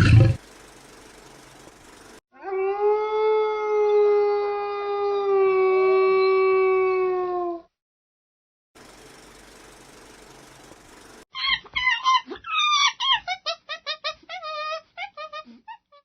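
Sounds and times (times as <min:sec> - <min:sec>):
dog howling: 0:02.4 - 0:07.5.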